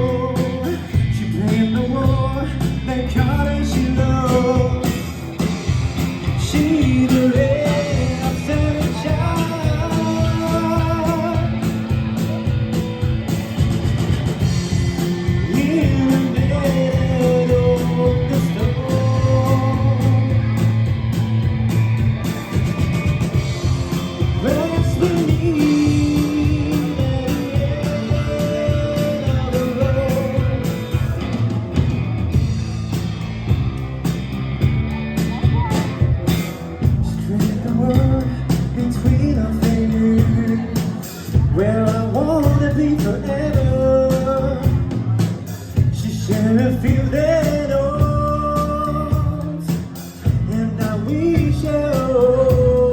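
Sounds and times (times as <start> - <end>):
person singing with vibrato: 0.0 - 5.4, 6.2 - 12.0, 14.5 - 20.8, 23.3 - 31.6, 36.9 - 52.9
bass guitar: 0.0 - 52.9
drum kit: 0.0 - 52.9
electric guitar: 0.0 - 52.9.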